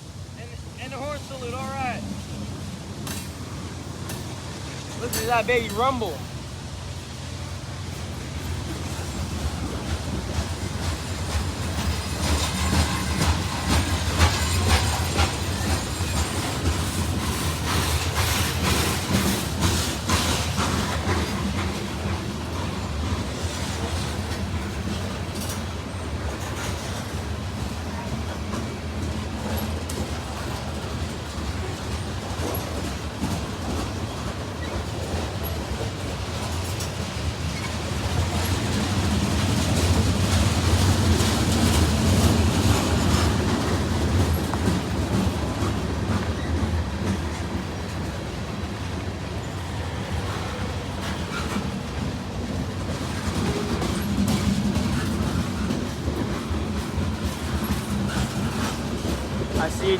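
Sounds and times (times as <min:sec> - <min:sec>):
train low rumble: 0:00.0 - 0:59.9
freight train wheels clattering: 0:00.1 - 0:59.9.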